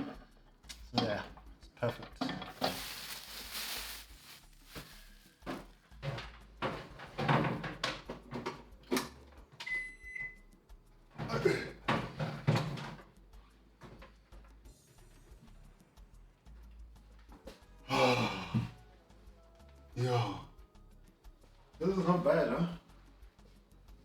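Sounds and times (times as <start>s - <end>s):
microwave electronic beep: 9.6s - 10.5s.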